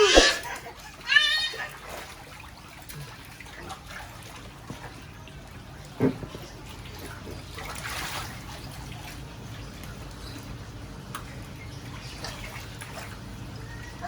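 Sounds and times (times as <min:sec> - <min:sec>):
sharp water slap: 0:00.0 - 0:00.5
water splashing and trickling: 0:00.0 - 0:14.0.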